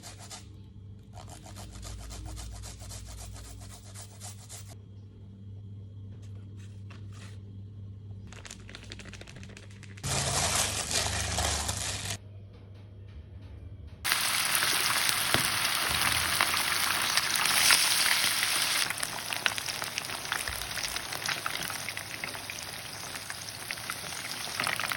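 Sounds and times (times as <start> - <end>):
low steady hum: 0.2 - 14.2.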